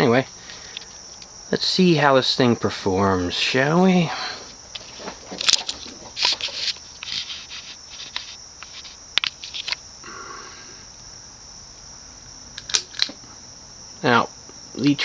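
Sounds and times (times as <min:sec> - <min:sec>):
steady high-pitched whine: 0:00.0 - 0:15.0
fan pull-chain switch clicking: 0:12.6 - 0:13.2.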